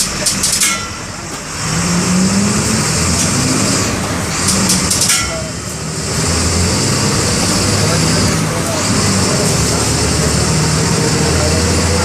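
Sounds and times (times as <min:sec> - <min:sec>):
sharp clicks or rattles: 0:00.0 - 0:00.9, 0:04.4 - 0:05.5
bus diesel engine under load: 0:00.0 - 0:12.0.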